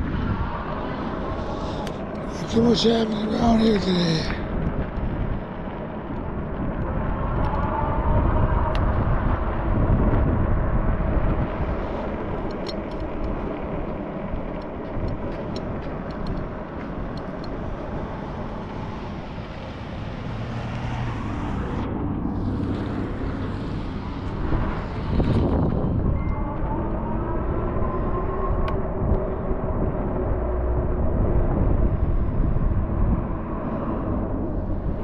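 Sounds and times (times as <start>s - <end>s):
road and traffic noise: 0.0s - 35.0s
wind on microphone: 0.0s - 35.0s
vehicle passing by: 17.6s - 26.2s.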